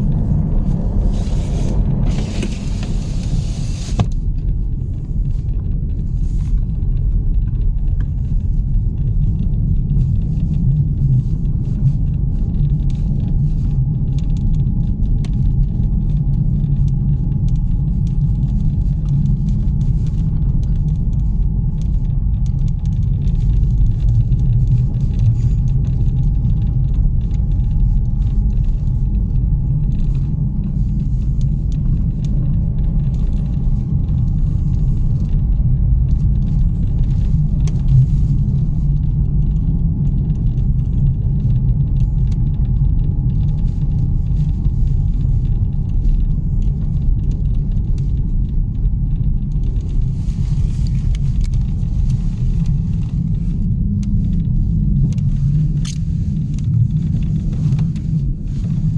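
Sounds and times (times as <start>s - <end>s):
car engine and tyres rumbling: 0.0s - 58.9s.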